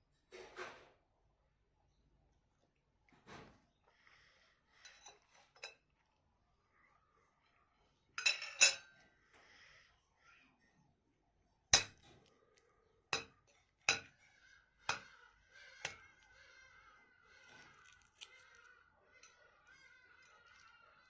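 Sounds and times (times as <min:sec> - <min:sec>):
cutlery clinking against a plate: 0:04.8 - 0:05.8, 0:08.2 - 0:09.0, 0:13.2 - 0:14.2.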